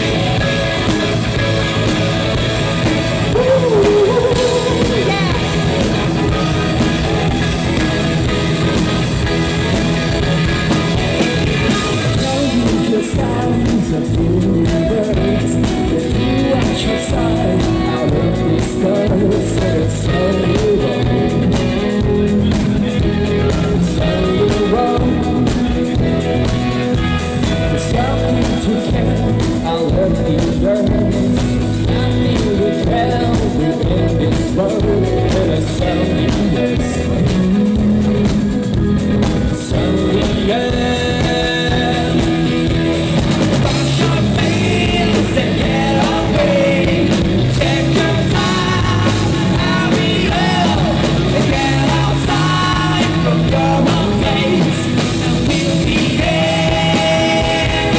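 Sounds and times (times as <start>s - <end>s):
bass guitar: 0.0s - 57.9s
drums: 0.0s - 57.9s
electric guitar: 0.0s - 57.9s
person singing: 3.0s - 7.8s, 39.6s - 57.9s.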